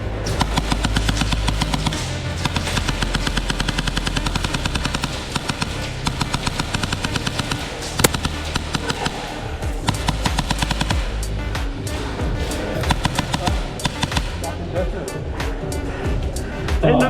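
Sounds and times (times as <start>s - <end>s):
sharp crack: 0.3s - 11.3s
music with fast percussive beat: 0.3s - 17.0s.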